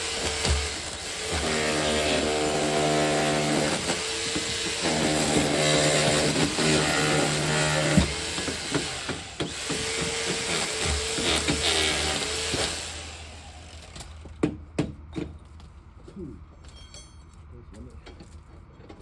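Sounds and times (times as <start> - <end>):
jackhammer breaking concrete: 0.0 - 14.2.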